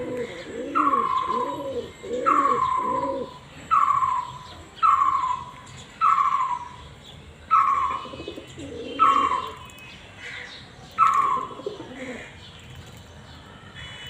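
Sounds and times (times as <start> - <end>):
pigeons cooing: 0.0 - 6.7, 7.5 - 9.6, 11.0 - 12.4.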